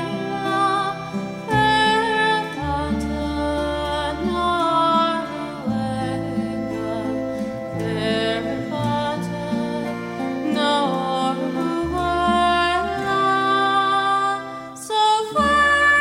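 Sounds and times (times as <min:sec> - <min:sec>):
gentle song with plucked strings: 0:00.0 - 0:16.0.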